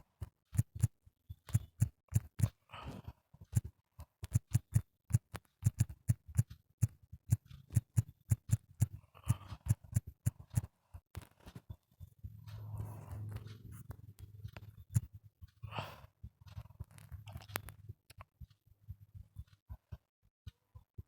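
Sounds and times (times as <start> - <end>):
fingers tapping touchscreen: 3.6 - 11.3.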